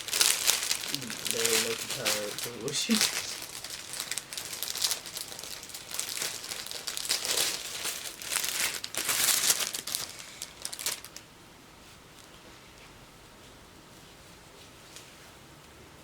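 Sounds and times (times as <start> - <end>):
wrapping paper crinkling and tearing: 0.0 - 11.3.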